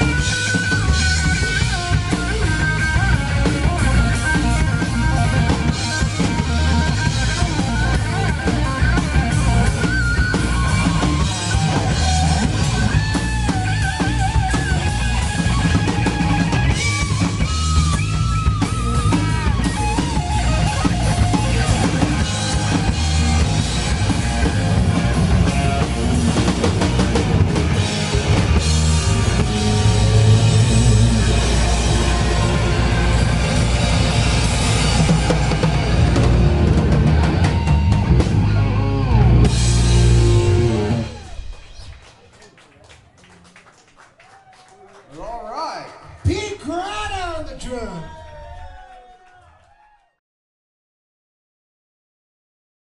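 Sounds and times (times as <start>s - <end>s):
bending guitar lead line: 0.0s - 41.9s
live rock band playing: 0.0s - 42.7s.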